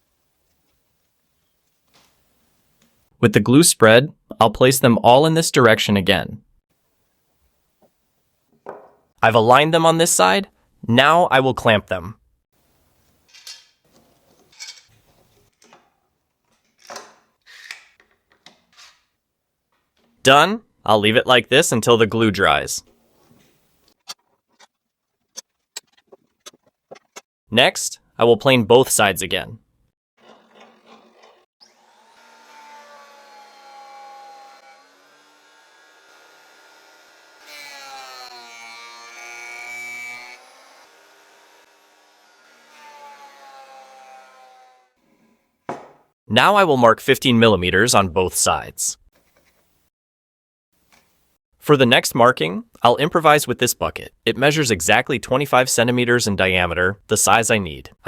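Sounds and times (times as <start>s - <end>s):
clamps scraping and rattling: 13.3s - 19.1s, 30.2s - 31.5s
thickness planer motor whine: 31.6s - 44.6s.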